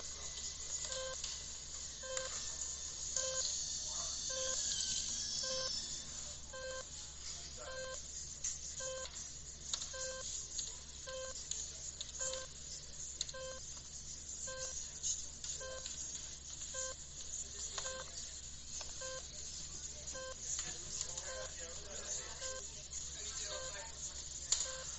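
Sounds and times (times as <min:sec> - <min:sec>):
short multi-tone electronic beeps: 0:00.8 - 0:01.2, 0:02.0 - 0:02.4, 0:03.2 - 0:03.6, 0:04.3 - 0:06.9, 0:07.7 - 0:08.1, 0:08.8 - 0:09.1, 0:09.9 - 0:10.3, 0:11.0 - 0:11.4, 0:12.2 - 0:12.6, 0:13.3 - 0:13.7, 0:14.4 - 0:14.8, 0:15.6 - 0:15.9, 0:16.7 - 0:17.0, 0:19.0 - 0:19.3, 0:20.1 - 0:20.4, 0:24.6 - 0:24.9.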